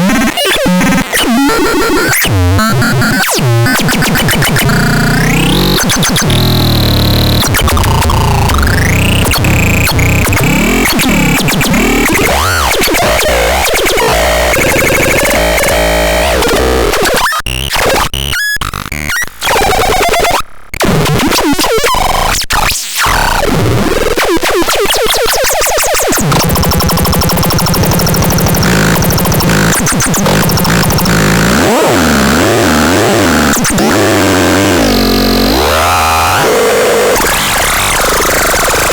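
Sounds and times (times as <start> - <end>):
synthesizer harsh noisy tones: 0.0 - 19.9, 24.9 - 38.9
buzzing synth pulse: 26.4 - 35.7.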